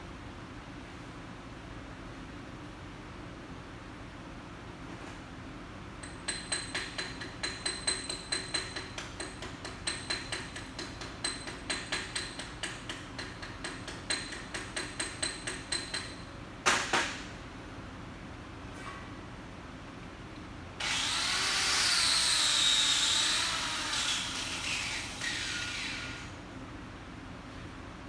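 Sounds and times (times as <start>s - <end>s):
chipping hammer tapping on metal: 6.0s - 16.1s.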